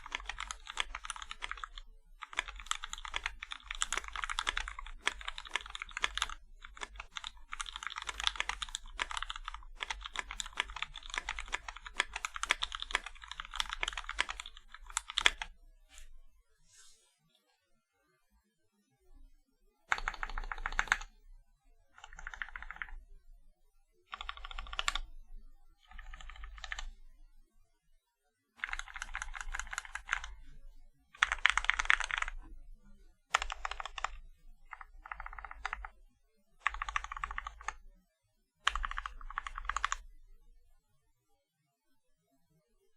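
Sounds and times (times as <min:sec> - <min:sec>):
mechanical keyboard typing: 0:00.0 - 0:15.5, 0:19.9 - 0:21.1, 0:22.0 - 0:23.0, 0:24.1 - 0:25.1, 0:25.8 - 0:26.9, 0:28.6 - 0:30.4, 0:31.2 - 0:32.5, 0:33.3 - 0:36.0, 0:36.6 - 0:37.8, 0:38.6 - 0:40.0.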